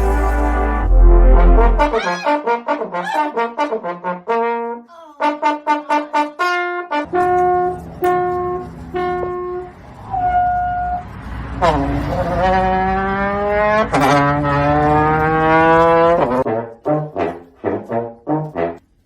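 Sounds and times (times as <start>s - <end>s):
low rumble: 0.0s - 2.0s
brass instrument playing: 0.0s - 9.7s, 11.6s - 19.0s.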